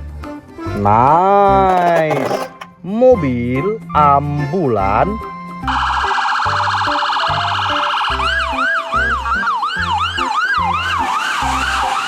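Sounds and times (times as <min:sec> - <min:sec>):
electronic ambulance siren: 0:05.7 - 0:12.0.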